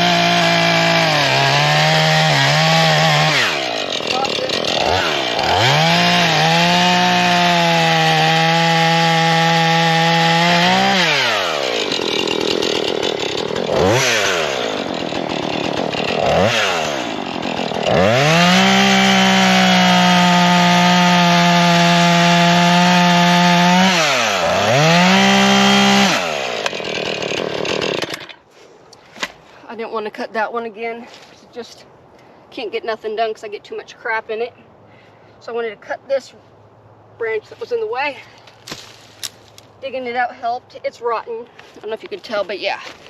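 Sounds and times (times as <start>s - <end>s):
chainsaw cutting and revving: 0.0s - 28.4s.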